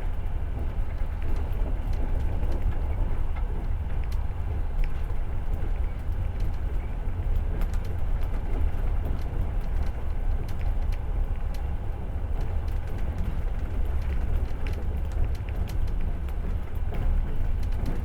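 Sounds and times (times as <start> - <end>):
train wheels rumbling on rails: 0.0 - 18.0
light clicks and rattles: 12.3 - 18.0.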